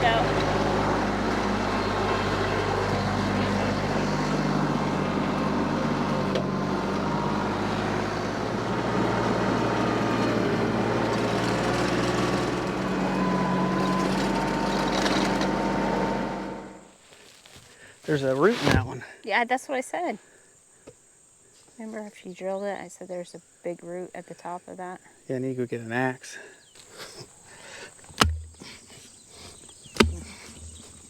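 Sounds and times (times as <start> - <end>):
tractor engine under load: 0.0 - 16.8, 27.9 - 31.0
auger boring into ground: 28.0 - 31.0.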